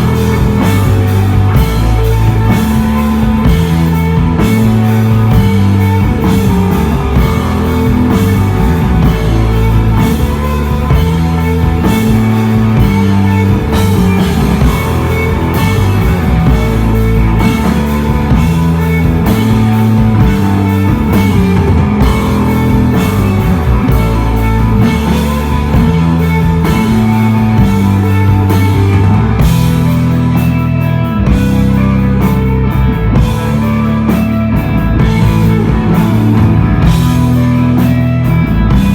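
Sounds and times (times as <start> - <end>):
bass line: 0.0 - 38.9
drum kit: 0.0 - 38.9
electric guitar: 0.0 - 38.9.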